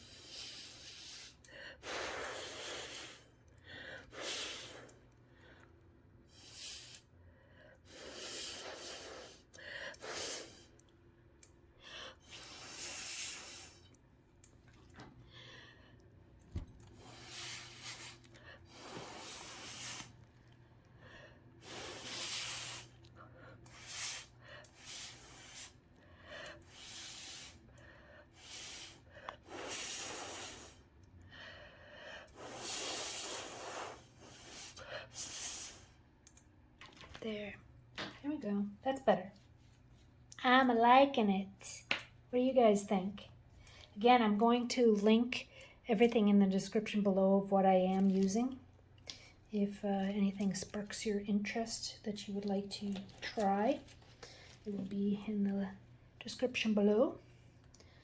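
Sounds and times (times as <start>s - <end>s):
short puffs of breath: 28.4s - 36.0s.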